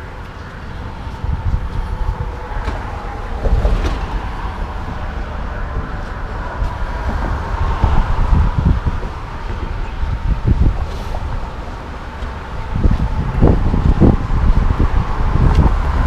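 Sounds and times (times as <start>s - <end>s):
road traffic: 0.0s - 16.0s
wind buffeting microphone: 0.0s - 16.0s.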